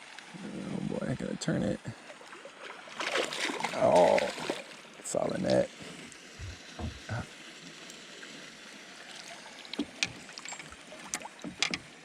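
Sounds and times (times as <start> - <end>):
faint water noise: 0.0 - 12.0
clicks and knocks of gear: 9.8 - 11.9.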